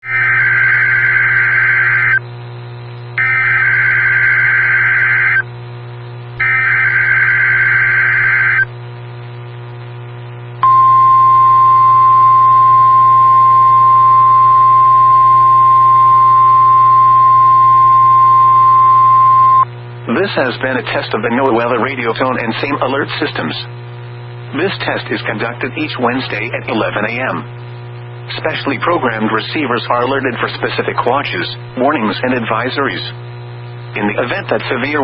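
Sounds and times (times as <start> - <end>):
low hum: 0.1 - 20.3
steady warning tone: 3.0 - 5.6, 6.4 - 8.7, 10.6 - 23.5.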